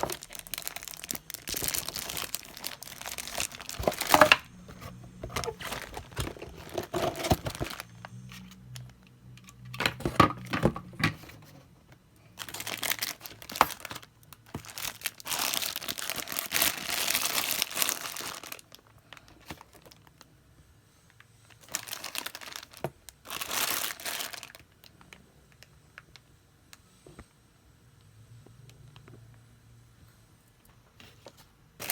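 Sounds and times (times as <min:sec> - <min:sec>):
plastic packaging crinkling: 0:00.0 - 0:11.5, 0:12.4 - 0:20.1, 0:21.6 - 0:25.0, 0:31.3 - 0:31.9.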